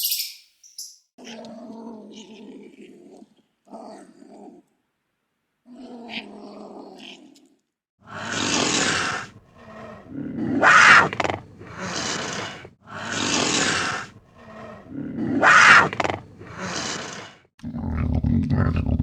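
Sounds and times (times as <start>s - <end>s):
large animal roaring and growling: 8.1s - 19.0s.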